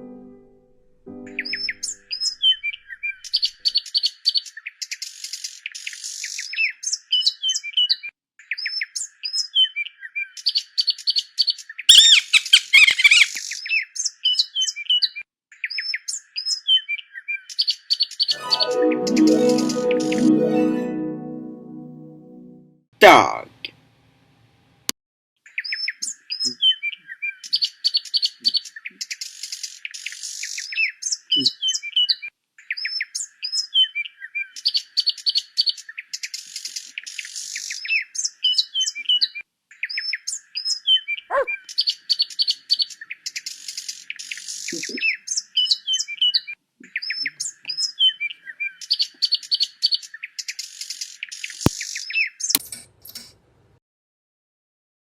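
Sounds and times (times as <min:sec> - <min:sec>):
birds chirping and trilling: 0:01.3 - 0:15.0, 0:25.5 - 0:52.6.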